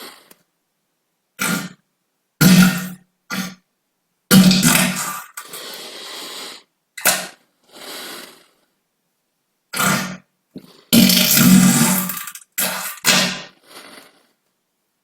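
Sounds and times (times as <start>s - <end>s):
farts: 1.4s - 1.8s, 2.4s - 3.6s, 4.3s - 5.5s, 9.8s - 14.3s.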